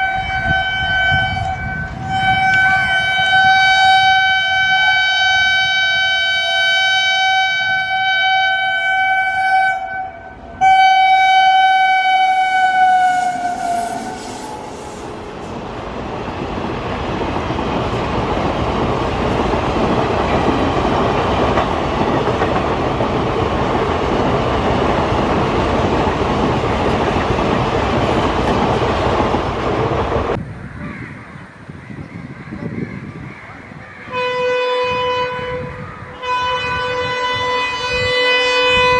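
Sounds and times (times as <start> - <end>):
locomotive air horn blowing: 0.0 - 15.3, 34.1 - 38.9
train wheels rushing on rails: 10.4 - 30.4.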